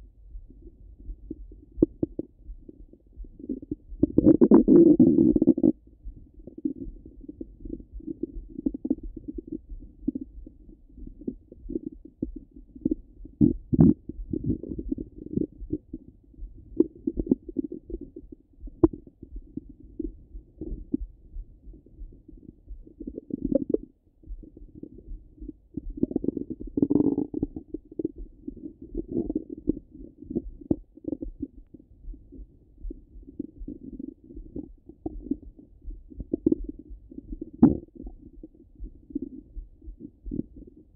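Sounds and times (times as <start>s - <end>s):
stomach gurgling: 0.6s - 40.9s.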